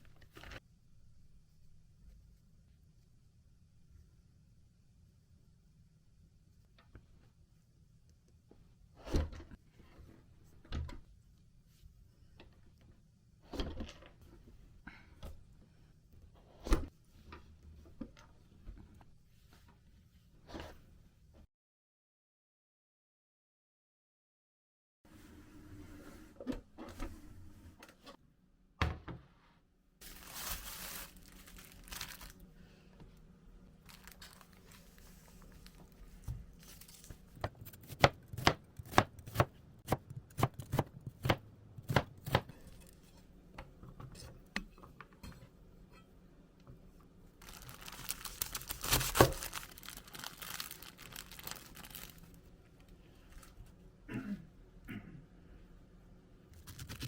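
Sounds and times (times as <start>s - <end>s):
packaging crinkling and tearing: 30.0s - 32.5s, 33.8s - 37.4s, 47.4s - 52.4s, 56.6s - 57.0s
knife chopping on cutting board: 37.4s - 42.6s.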